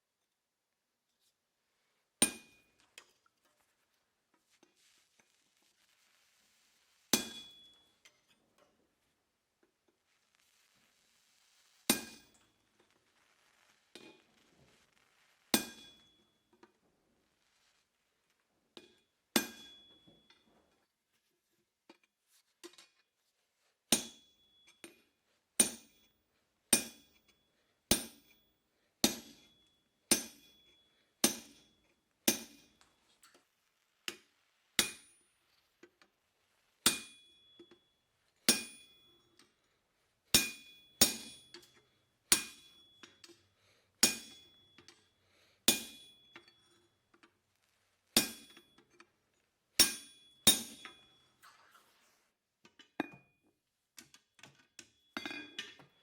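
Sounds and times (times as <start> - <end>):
hammer striking steel on anvil: 2.2 - 2.7, 7.1 - 7.9, 11.9 - 12.4, 15.6 - 16.3, 18.8 - 20.4, 23.9 - 25.0, 25.6 - 26.1, 26.7 - 28.4, 29.0 - 32.8, 34.8 - 35.2, 36.9 - 37.8, 38.5 - 39.4, 40.4 - 43.4, 44.0 - 45.1, 45.7 - 46.9, 48.2 - 49.0, 49.8 - 51.2, 54.5 - 56.0.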